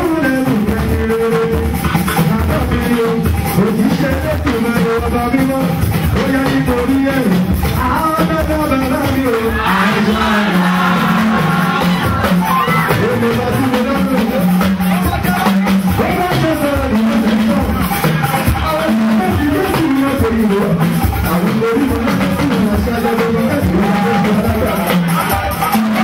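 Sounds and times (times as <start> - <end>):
steady drums: 0.0 - 26.0
voices singing: 9.1 - 20.6.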